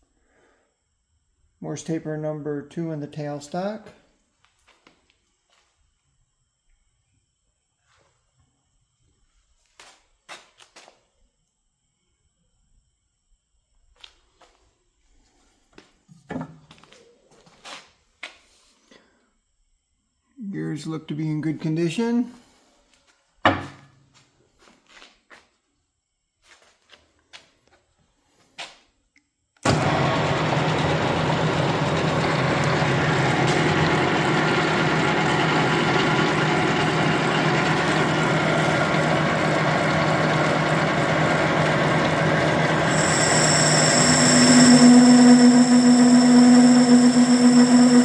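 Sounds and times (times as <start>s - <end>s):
metal lathe whirring: 29.6s - 48.0s
high steady whine: 29.7s - 48.0s.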